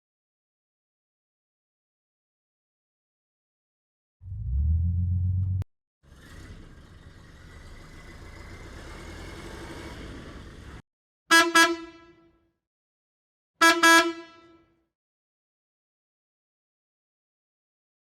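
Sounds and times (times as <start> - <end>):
car horn toots: 11.3 - 12.4, 13.6 - 14.7.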